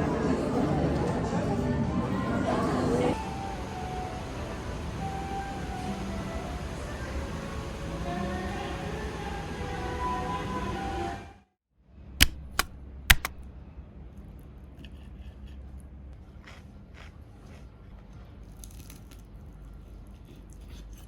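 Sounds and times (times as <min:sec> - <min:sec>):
sharp clicks: 0:12.2 - 0:13.4.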